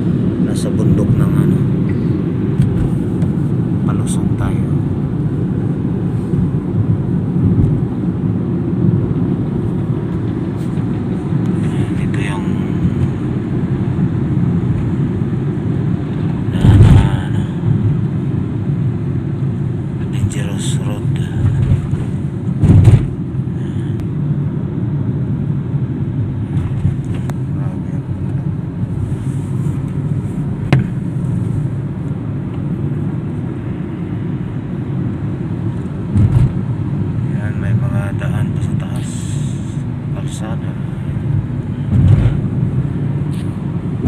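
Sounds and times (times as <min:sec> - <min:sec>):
vehicle engine and road noise: 0:00.0 - 0:44.0
short thump: 0:21.6 - 0:23.1, 0:30.7 - 0:31.0.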